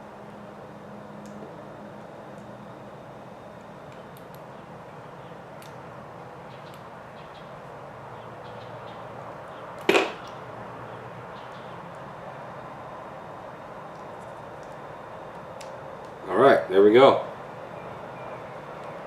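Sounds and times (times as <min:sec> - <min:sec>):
sharp knock or snap: 0:09.9 - 0:10.2.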